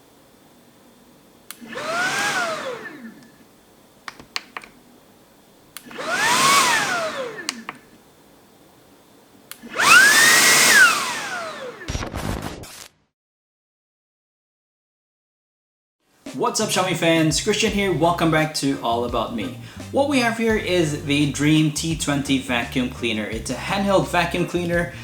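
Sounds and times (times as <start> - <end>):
vacuum motor whine: 1.5 - 3.6, 5.8 - 8.1, 9.5 - 12.0
vacuum switch click: 7.3 - 7.8.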